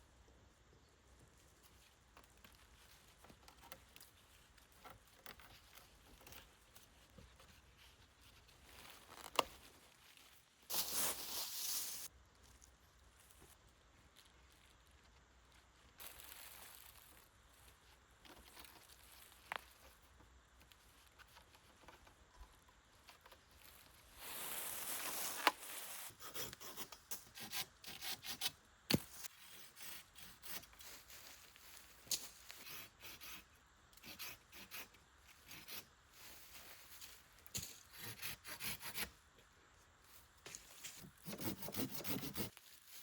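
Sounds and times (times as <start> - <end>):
hand tool scraping wood: 40.8 - 42.6.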